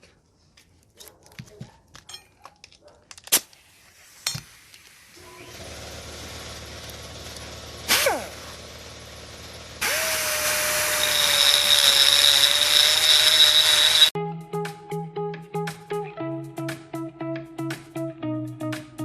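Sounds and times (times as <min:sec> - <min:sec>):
power tool grinding: 0:05.2 - 0:14.2
plucked guitar music: 0:14.2 - 0:19.0.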